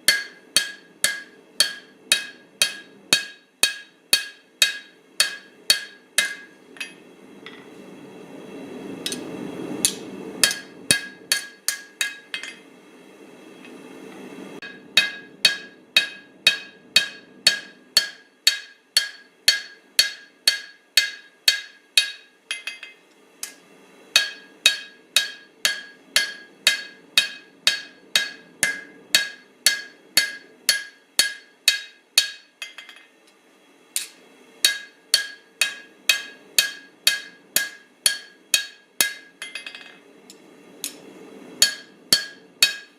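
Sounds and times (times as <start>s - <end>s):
hammer striking steel on anvil: 0.0s - 7.7s, 9.0s - 12.6s, 14.6s - 33.1s, 34.0s - 40.0s, 41.6s - 42.9s.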